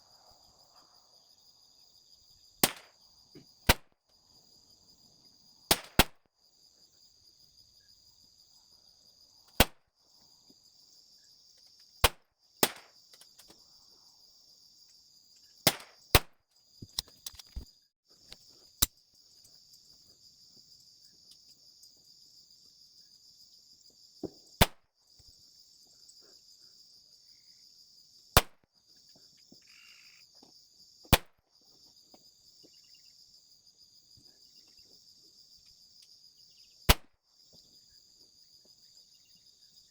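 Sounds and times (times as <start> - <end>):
insect chirring: 0.0 - 39.9
pistol shots: 2.6 - 2.9, 5.7 - 6.2, 15.7 - 16.3.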